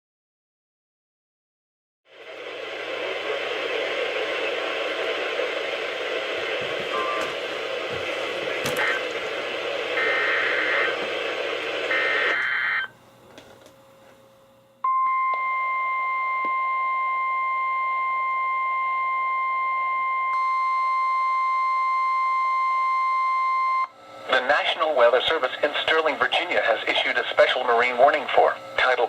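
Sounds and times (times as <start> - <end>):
radio static hiss: 2.1 - 13.0, 24.0 - 29.0
steady warning alarm tone: 6.5 - 13.0, 14.8 - 25.4.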